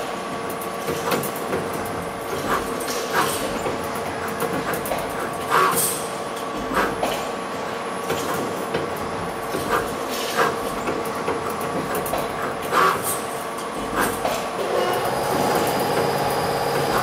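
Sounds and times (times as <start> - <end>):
machine hum: 14.6 - 17.0.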